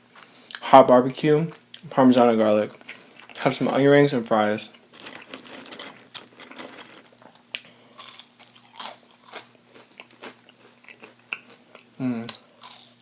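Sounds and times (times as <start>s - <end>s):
crunchy chewing of fried food: 4.6s - 13.0s.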